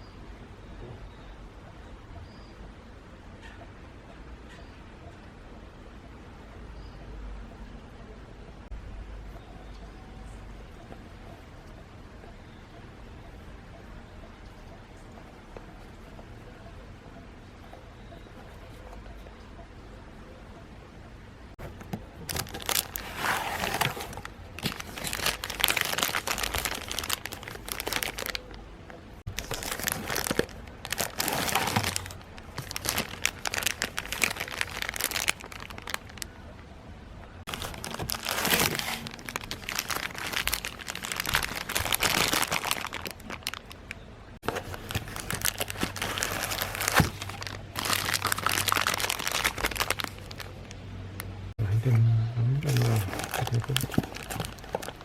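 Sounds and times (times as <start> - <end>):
plastic packaging crinkling: 21.6 - 36.3, 37.4 - 50.8, 51.8 - 55.0
packaging tearing: 21.7 - 28.5, 29.3 - 36.2, 37.5 - 43.8, 44.4 - 50.5, 52.6 - 55.0.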